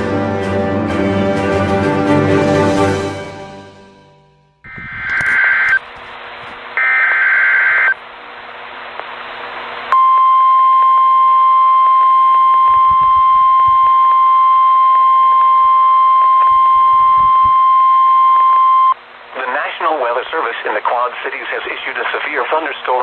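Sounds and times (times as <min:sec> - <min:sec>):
warbling data tones: 0:04.6 - 0:05.8, 0:06.8 - 0:08.0
radio hiss: 0:04.7 - 0:09.9, 0:19.1 - 0:23.0.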